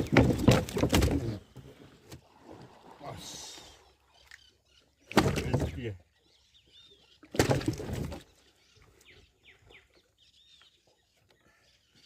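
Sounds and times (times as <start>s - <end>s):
small birds chirping: 3.0s - 12.0s.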